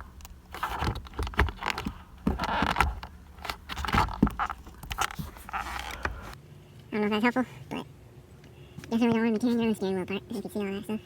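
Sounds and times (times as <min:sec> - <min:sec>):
plastic parts clicking and tapping: 0:00.0 - 0:06.4.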